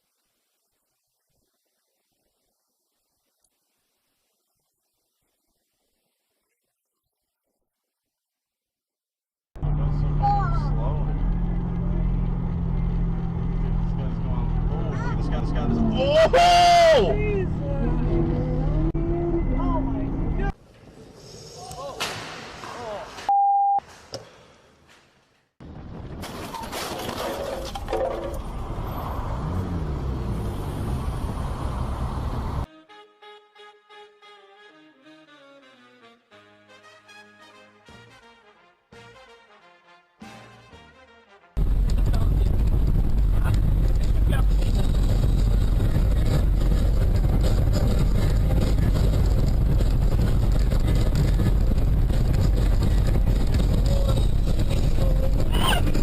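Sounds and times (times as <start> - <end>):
car engine and tyres running: 9.6 - 20.6, 26.2 - 32.7, 41.6 - 56.0
brass music: 32.7 - 41.6.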